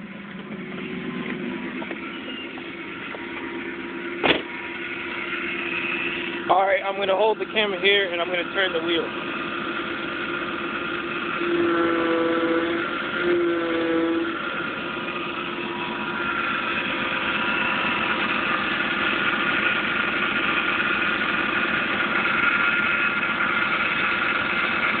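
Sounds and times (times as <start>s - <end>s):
car engine idling: 0.0s - 25.0s
power steering whine: 0.0s - 25.0s.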